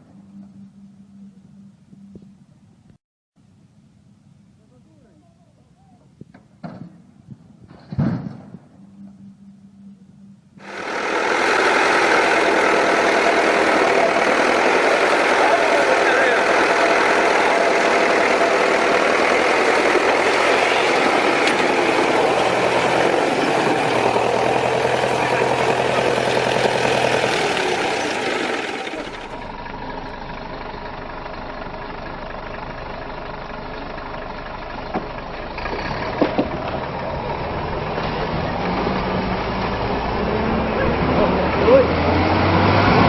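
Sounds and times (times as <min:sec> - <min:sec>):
construction machinery engine running: 0:08.9 - 0:43.0.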